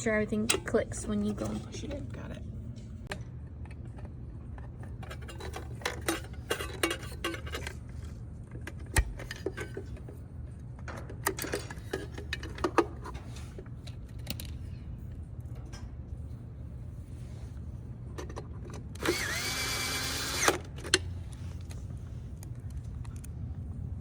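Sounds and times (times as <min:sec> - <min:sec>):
steady low hum: 0:00.0 - 0:24.0
small clicks and clinks of parts: 0:13.8 - 0:14.6.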